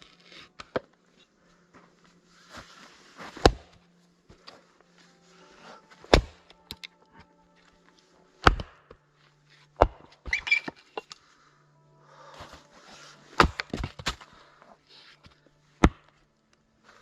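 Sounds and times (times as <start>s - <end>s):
heavy chopping blows on wood: 3.3s - 3.8s, 6.0s - 6.5s, 13.4s - 14.3s.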